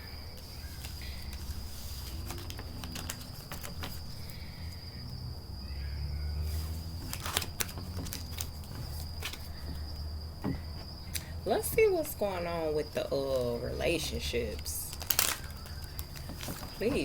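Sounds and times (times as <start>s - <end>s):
high-pitched insect trill: 0.0s - 17.0s
cards shuffling with flicking clicks: 0.4s - 4.1s, 7.0s - 9.5s, 14.9s - 16.8s.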